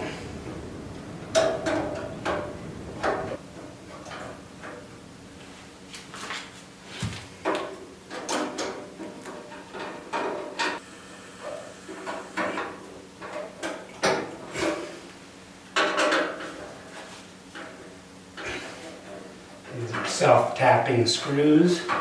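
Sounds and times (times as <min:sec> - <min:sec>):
metal clunks and rattles: 0:00.0 - 0:04.9, 0:07.4 - 0:10.8, 0:15.7 - 0:20.2.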